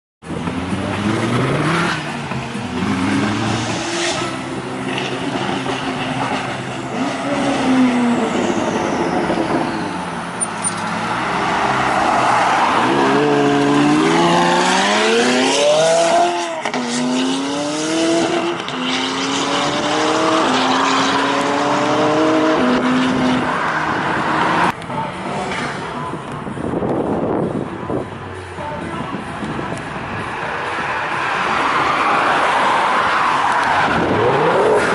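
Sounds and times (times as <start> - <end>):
sports car engine revving: 0.3 - 6.2, 12.6 - 24.7, 33.9 - 34.9
car accelerating through gears: 10.9 - 24.7, 32.8 - 34.9.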